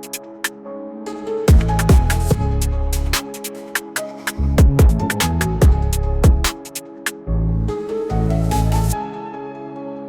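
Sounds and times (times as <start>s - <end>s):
deep falling kick drum hits: 4.6s - 6.5s.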